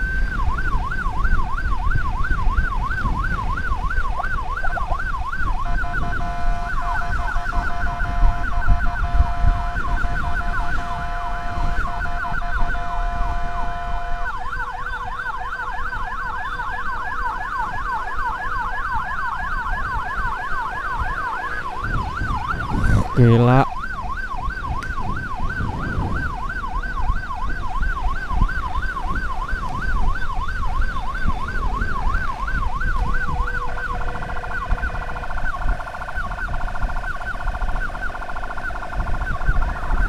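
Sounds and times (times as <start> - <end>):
emergency sirens wailing: 0.0 - 40.0
road and wind rumble: 0.0 - 40.0
steady horn-like tone: 5.6 - 14.4, 33.2 - 36.1.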